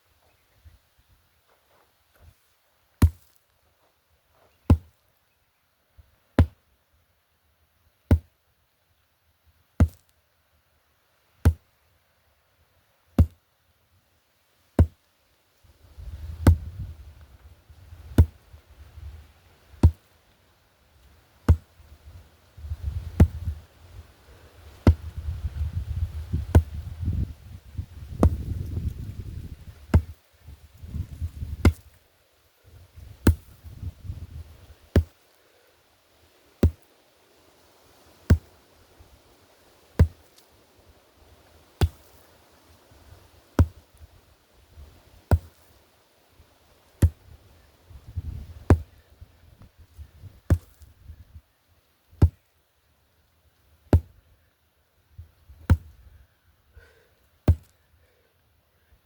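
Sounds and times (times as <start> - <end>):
sledgehammer strikes: 29.9 - 30.2, 34.9 - 35.2, 40.0 - 40.3, 41.8 - 42.2, 55.6 - 56.0.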